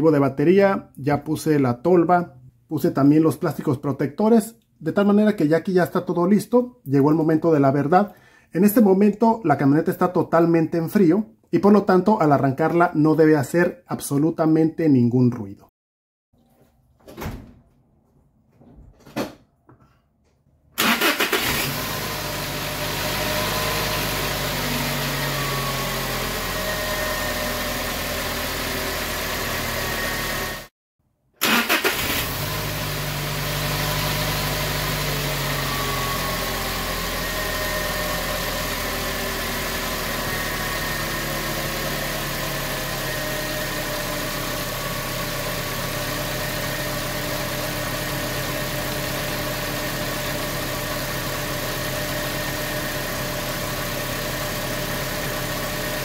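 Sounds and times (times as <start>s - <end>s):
engine cranking and idling: 20.8s - 22.5s.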